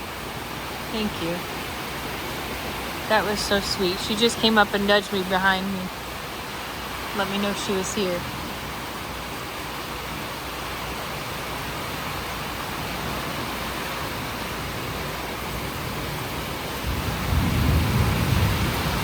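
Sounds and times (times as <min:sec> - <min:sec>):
heavy rain falling: 0:00.0 - 0:19.0
low rumble of thunder: 0:15.6 - 0:19.0.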